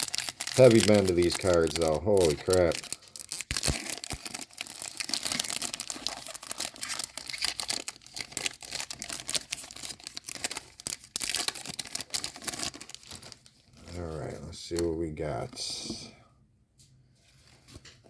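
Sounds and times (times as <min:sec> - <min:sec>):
foil wrapper tearing and crinkling: 0:00.0 - 0:13.6.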